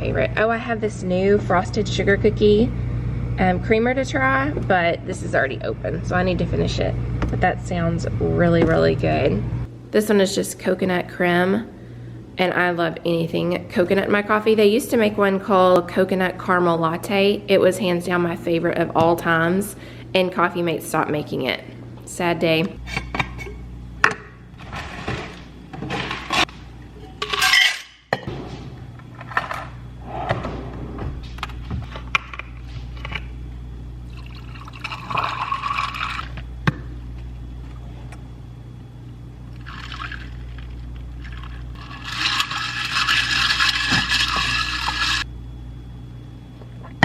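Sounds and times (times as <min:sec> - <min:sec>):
liquid pouring into a glass: 0:34.1 - 0:36.3, 0:39.6 - 0:45.0.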